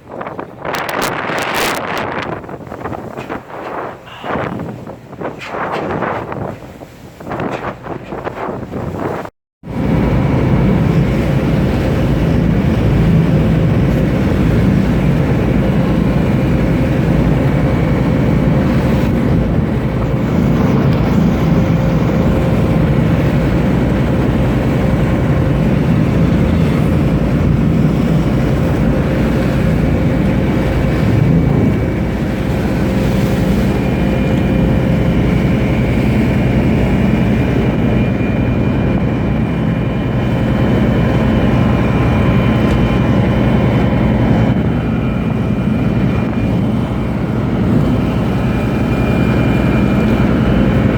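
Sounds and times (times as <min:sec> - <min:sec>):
loud engine drone: 0:09.6 - 0:50.9.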